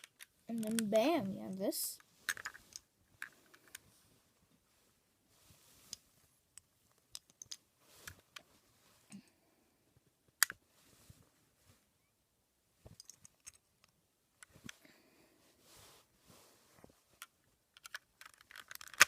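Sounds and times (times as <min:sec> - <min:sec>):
plastic cube pieces clicking: 0:02.3 - 0:03.8, 0:17.7 - 0:19.0.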